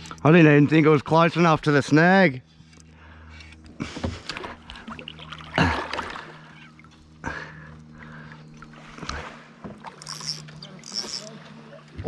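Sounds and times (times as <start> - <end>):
water splashing around a kayak: 3.9 - 12.0.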